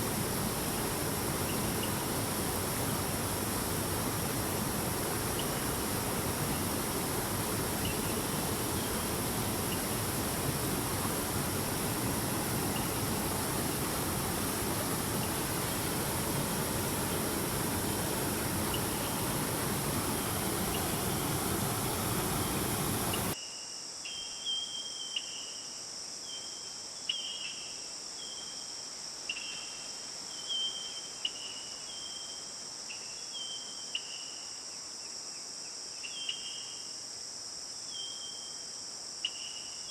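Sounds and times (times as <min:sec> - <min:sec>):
river water rushing: 0:00.0 - 0:23.4
high insect drone: 0:00.0 - 0:24.2.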